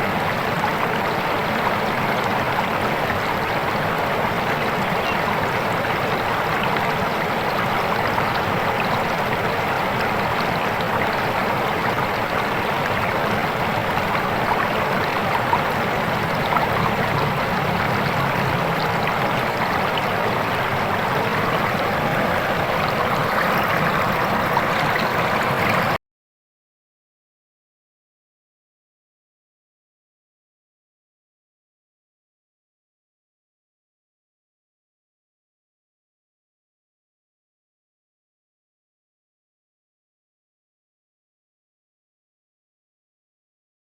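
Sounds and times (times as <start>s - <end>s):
river water flowing: 0.0s - 26.0s.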